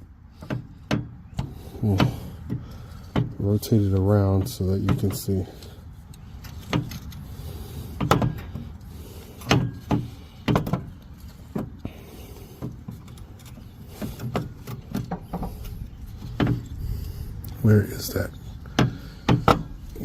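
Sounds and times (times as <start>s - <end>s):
low steady rumble: 0.0s - 20.0s
metal mower parts clunking: 8.0s - 20.0s.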